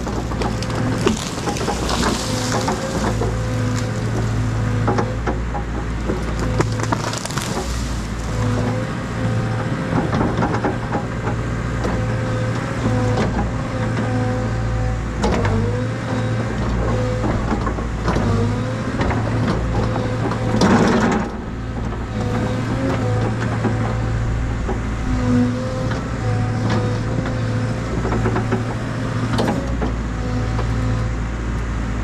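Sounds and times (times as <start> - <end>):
knocks and crackles: 0.0 - 12.0, 19.0 - 31.0
excavator diesel engine: 0.0 - 32.0
hydraulic whine: 11.9 - 31.2.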